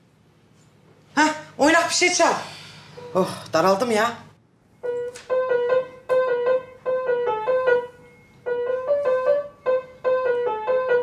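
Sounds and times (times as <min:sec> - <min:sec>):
piano playing lively tune: 0:04.8 - 0:11.0.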